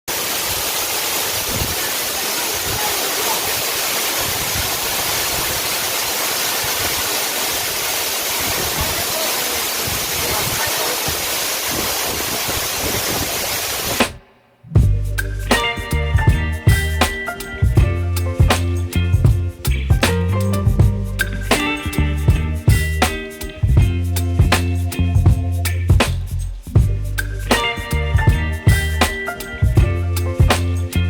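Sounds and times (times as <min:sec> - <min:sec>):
waterfall rushing: 0:00.1 - 0:14.0.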